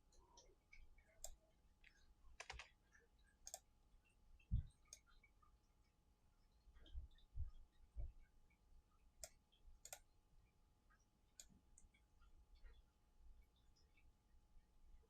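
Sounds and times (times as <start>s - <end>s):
faint mouse clicks: 0.0s - 3.7s, 4.4s - 6.0s, 9.2s - 10.1s, 10.9s - 14.1s.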